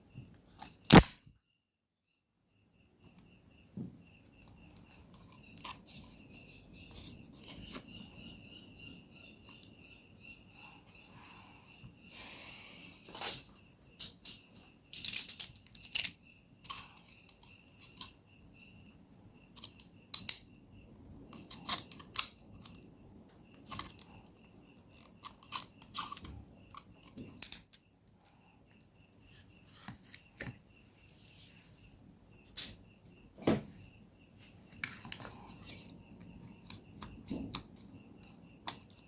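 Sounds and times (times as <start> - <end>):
plastic clicks and snaps: 0.6 - 1.2.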